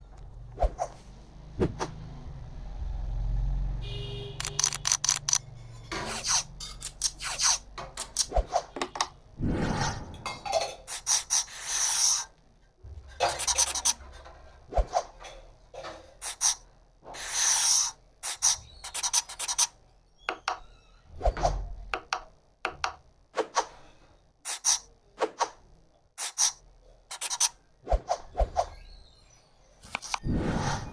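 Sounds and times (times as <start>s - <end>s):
tool scraping on wood: 4.4s - 9.1s, 13.1s - 15.2s, 15.8s - 19.7s, 26.2s - 27.6s, 29.8s - 30.2s.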